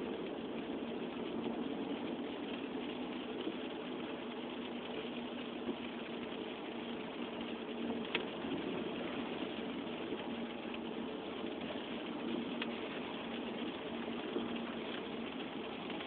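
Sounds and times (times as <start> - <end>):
car engine drone: 0.0 - 16.0
road noise inside car: 0.0 - 16.0.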